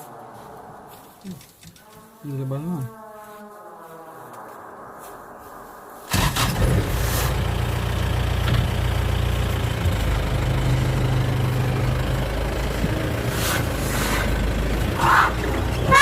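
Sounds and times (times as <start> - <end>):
vehicle engine idling: 6.1 - 16.0.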